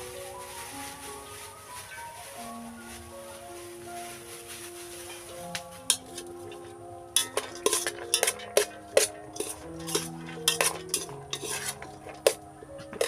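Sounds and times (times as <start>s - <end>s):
soft background music: 0.0s - 13.0s
spoon clinking against bowl: 5.9s - 13.0s.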